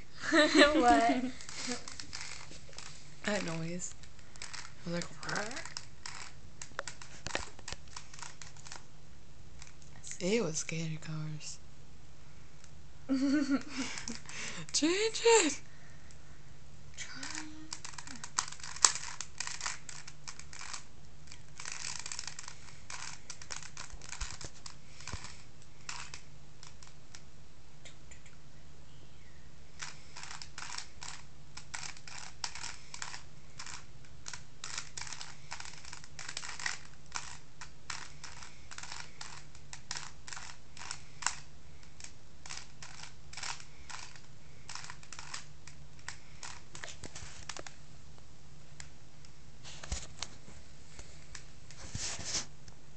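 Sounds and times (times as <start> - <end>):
rubik's cube clicking: 1.3 - 8.9, 9.6 - 9.9, 17.2 - 27.3, 29.8 - 47.7.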